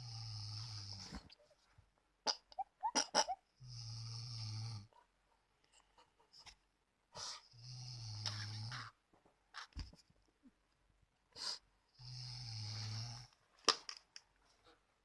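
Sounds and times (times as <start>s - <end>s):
person snoring: 0.0s - 1.2s, 3.6s - 4.9s, 7.5s - 8.9s, 12.0s - 13.3s.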